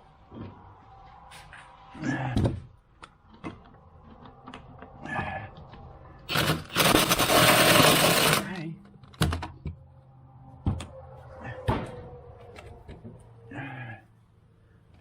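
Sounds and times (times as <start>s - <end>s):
impact wrench rattling: 6.3s - 8.4s.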